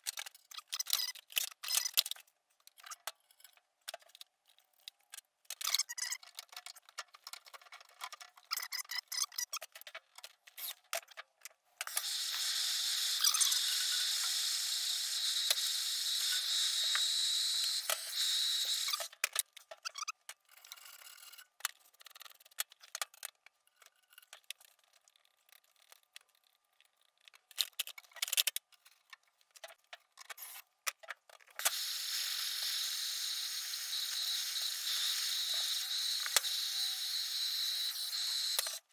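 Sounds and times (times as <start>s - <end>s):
tools and fittings clicking: 11.8s - 20.1s, 30.2s - 38.9s.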